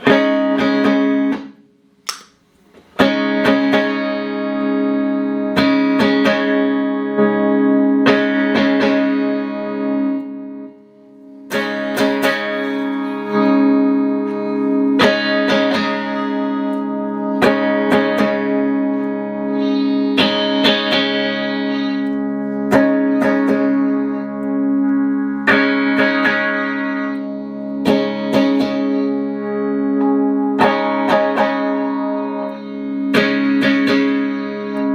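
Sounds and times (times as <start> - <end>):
electric guitar chords ringing: 0.0 - 34.9
click: 2.0 - 2.8.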